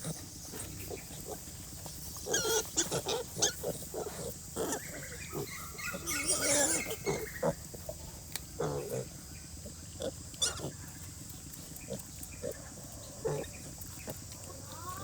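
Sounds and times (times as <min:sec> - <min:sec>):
pigs grunting: 0:00.0 - 0:15.0
pig high call: 0:04.6 - 0:07.6.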